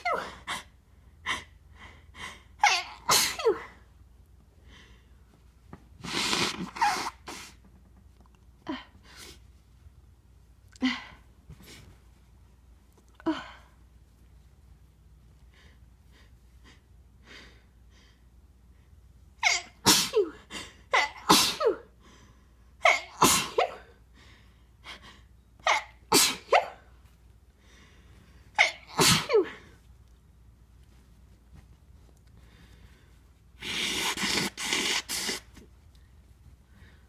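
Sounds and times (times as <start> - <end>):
person sneezing loudly: 2.6 - 3.8, 6.0 - 7.6, 19.4 - 20.4, 21.0 - 21.9, 22.8 - 24.0, 25.6 - 26.9, 28.6 - 29.7, 33.6 - 35.6
person sniffing: 6.0 - 7.6, 33.5 - 35.7.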